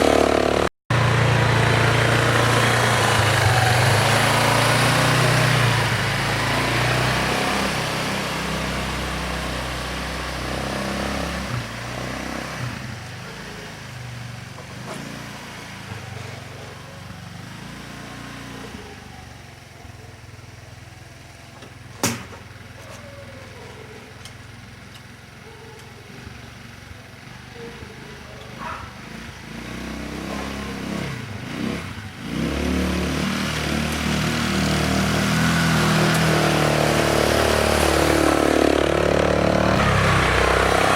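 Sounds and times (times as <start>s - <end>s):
atv engine running: 0.0s - 40.9s.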